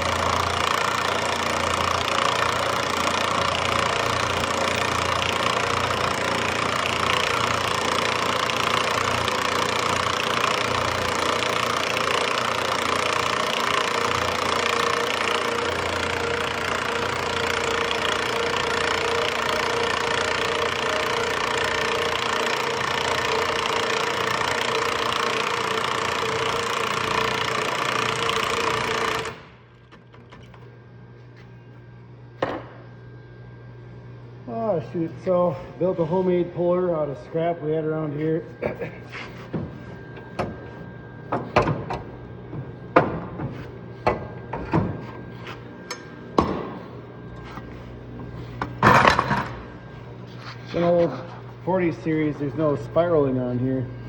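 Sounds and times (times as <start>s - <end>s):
loud mechanical clatter: 0.0s - 30.6s, 48.8s - 49.7s
engine running: 0.0s - 30.7s.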